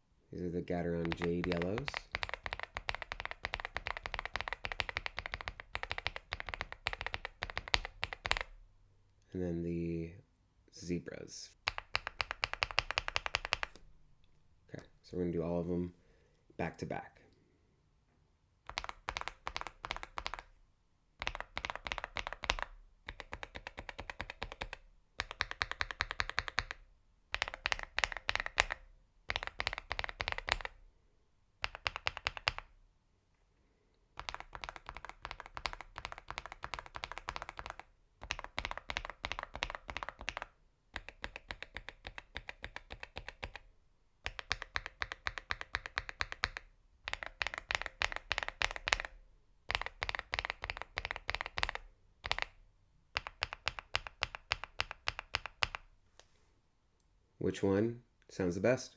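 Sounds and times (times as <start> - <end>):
mechanical keyboard key clicks: 49.7 - 52.5.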